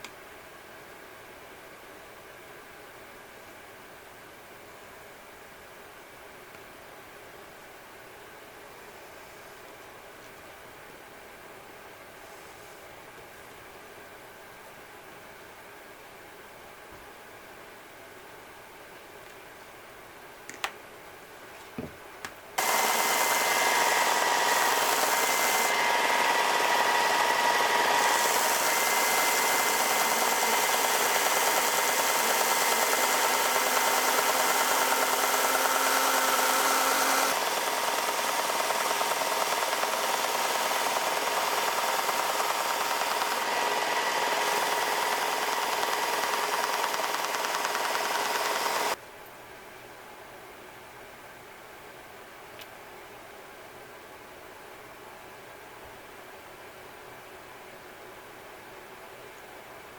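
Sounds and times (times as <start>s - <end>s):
electric motor whining: 22.6s - 49.0s.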